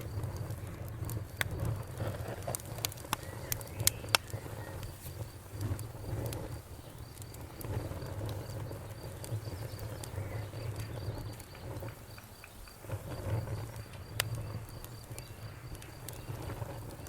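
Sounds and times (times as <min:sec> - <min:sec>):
fire pops and snaps: 0:00.0 - 0:17.0
wood fire crackling: 0:00.0 - 0:17.0.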